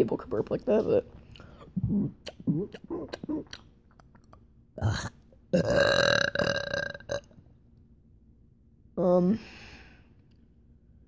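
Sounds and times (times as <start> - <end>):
person burping: 1.8 - 3.6, 4.8 - 7.3.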